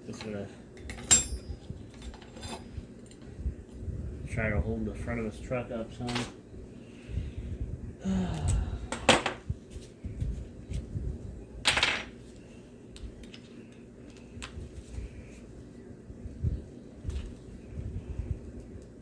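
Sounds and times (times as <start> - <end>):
hand tools and parts clattering: 0.0 - 3.3, 6.0 - 6.4.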